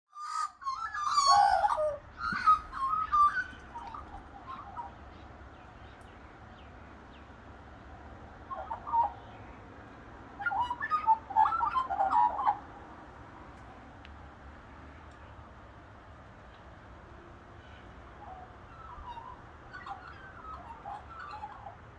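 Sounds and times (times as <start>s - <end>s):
magpies carolling: 0.2s - 5.0s, 10.4s - 12.7s, 18.2s - 21.9s.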